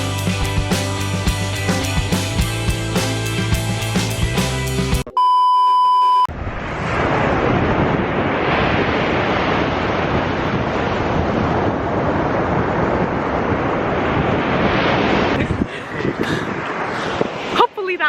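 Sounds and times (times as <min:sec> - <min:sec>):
high-pitched electronic beep: 0:05.1 - 0:06.3
wind buffeting microphone: 0:06.3 - 0:17.8
surf rushing: 0:06.3 - 0:18.0.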